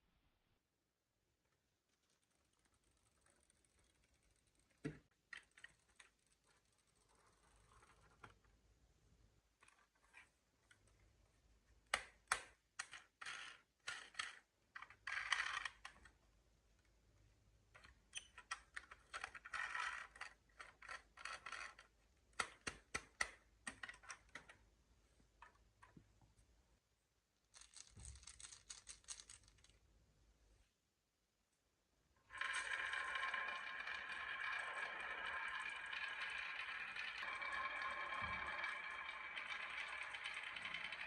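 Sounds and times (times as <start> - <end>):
marbles clicking on wooden blocks: 12.0 - 16.0, 32.4 - 41.0
marbles rolling rattle: 32.3 - 41.0.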